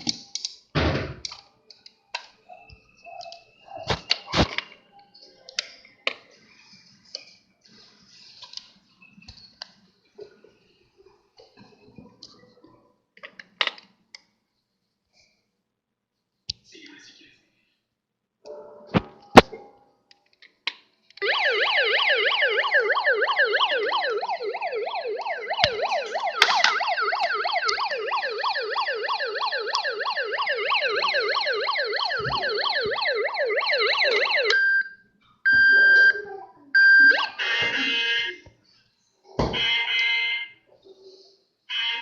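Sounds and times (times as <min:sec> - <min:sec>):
toy electronic siren yelping: 0:21.2 - 0:38.4, 0:41.7 - 0:42.0.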